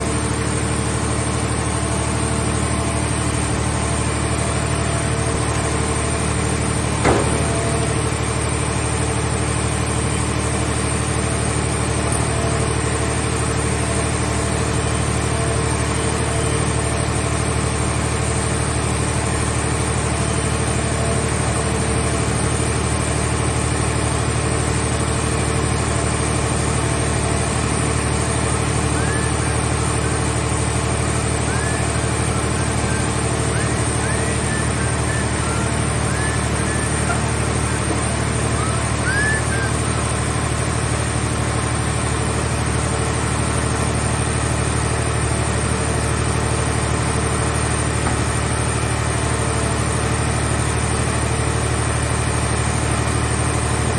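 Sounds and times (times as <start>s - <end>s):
baler engine running: 0.0s - 53.9s
short sharp knock: 7.0s - 7.8s.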